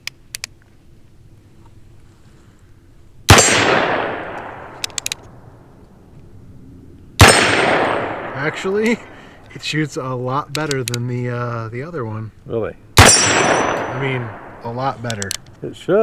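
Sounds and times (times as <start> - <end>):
revolver hammer clicks: 0.0 - 0.6, 4.2 - 5.4, 10.4 - 11.1, 13.0 - 15.7
revolver shots echoing: 3.3 - 6.1, 7.2 - 9.6, 12.9 - 15.7.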